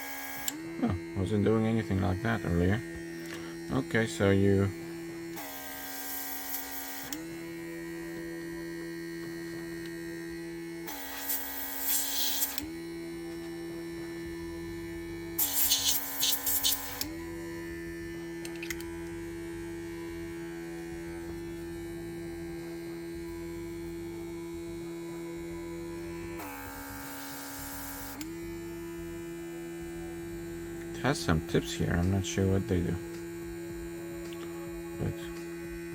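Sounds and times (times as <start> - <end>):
air compressor humming: 0.0 - 35.9
air hissing from nozzle: 15.4 - 17.0.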